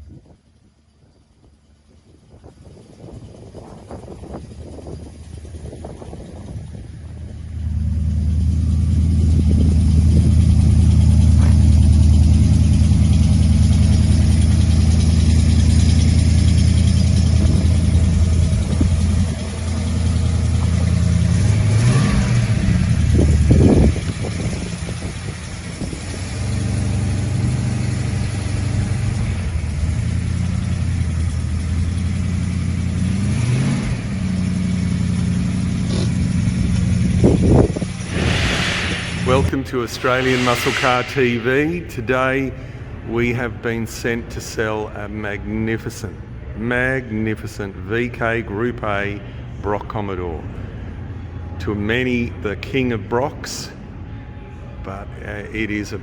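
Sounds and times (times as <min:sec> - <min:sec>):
car engine running and revving: 0:01.8 - 0:40.9.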